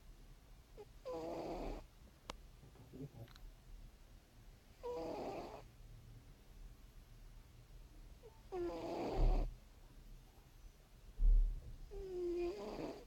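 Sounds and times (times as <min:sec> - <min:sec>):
cat snoring: 0:00.8 - 0:01.9, 0:04.8 - 0:05.7, 0:08.2 - 0:09.5, 0:11.9 - 0:13.0.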